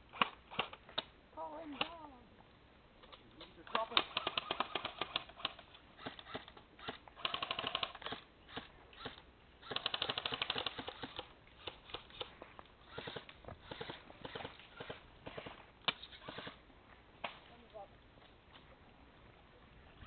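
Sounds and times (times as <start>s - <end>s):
airsoft guns firing bursts: 3.7s - 16.6s.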